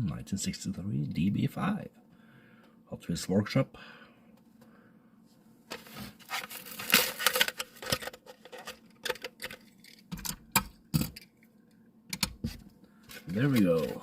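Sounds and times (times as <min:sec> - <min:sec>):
blister pack tearing and crackling: 0:06.2 - 0:08.8.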